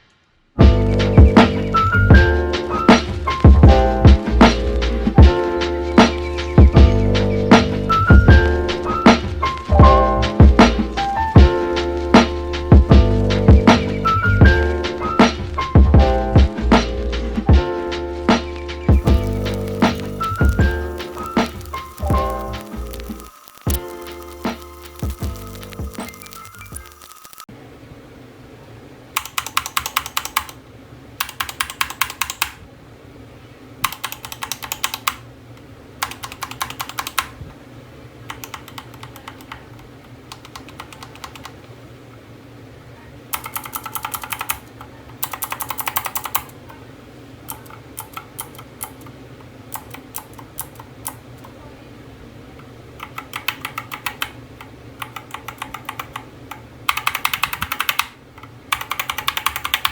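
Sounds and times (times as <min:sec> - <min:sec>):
mechanical keyboard typing: 0:18.9 - 0:27.5, 0:29.2 - 0:30.6, 0:31.2 - 0:32.6, 0:33.8 - 0:35.2, 0:36.0 - 0:37.4, 0:38.3 - 0:41.6, 0:43.3 - 0:46.6, 0:47.5 - 0:51.6, 0:53.0 - 0:59.9.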